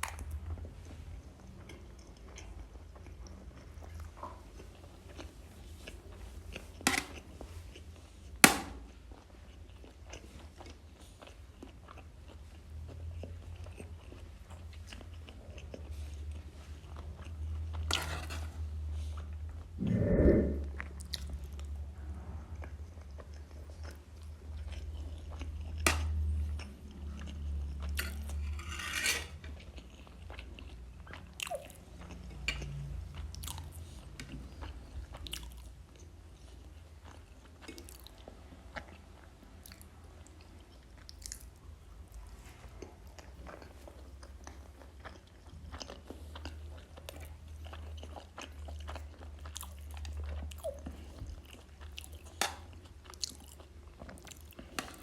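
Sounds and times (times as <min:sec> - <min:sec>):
person chewing crunchy food: 0:00.1 - 0:17.9, 0:22.9 - 0:28.6, 0:29.5 - 0:41.7, 0:42.7 - 0:55.0
wet mouth clicks: 0:19.8 - 0:20.8.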